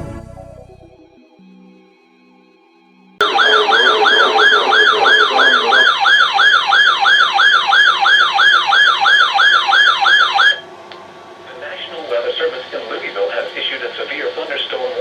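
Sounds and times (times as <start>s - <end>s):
electronic yelp siren: 3.2s - 10.7s.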